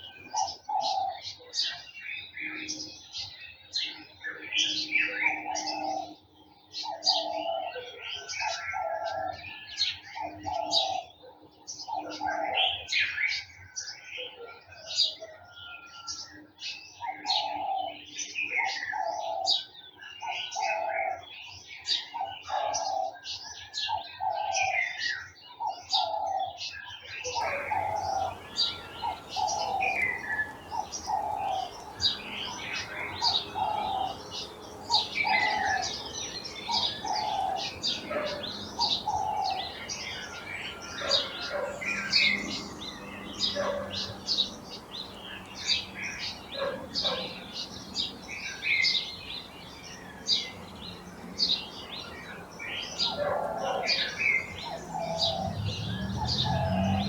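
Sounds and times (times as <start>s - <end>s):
birds chirping: 0.0s - 13.2s, 17.0s - 19.6s, 27.3s - 57.0s
low bird call: 27.4s - 57.0s.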